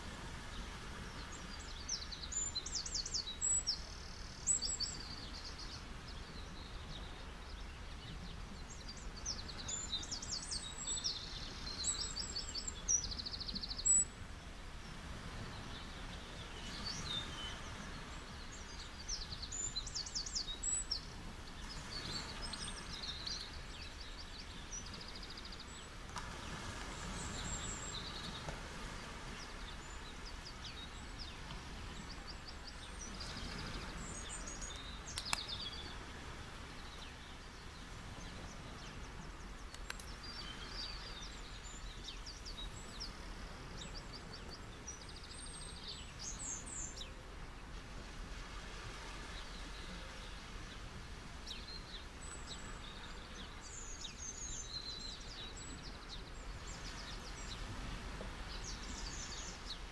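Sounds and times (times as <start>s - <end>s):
songbirds chirping and trilling: 0.0s - 59.9s
ocean surf rushing: 25.8s - 45.0s.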